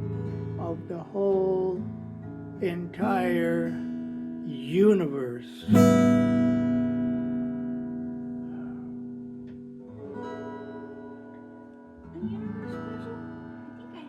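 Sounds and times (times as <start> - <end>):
acoustic guitar strumming: 0.0 - 14.0
person singing: 12.1 - 14.0.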